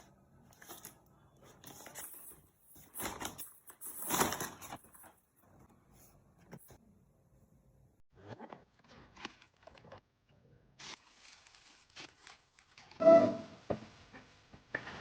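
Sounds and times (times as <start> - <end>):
packaging rustling and crinkling: 0.5 - 5.6.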